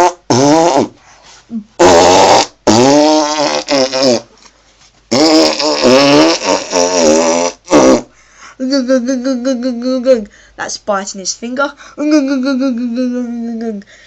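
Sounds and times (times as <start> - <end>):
buzzy fart-like noises: 0.0 - 1.0, 1.8 - 4.3, 5.1 - 8.1.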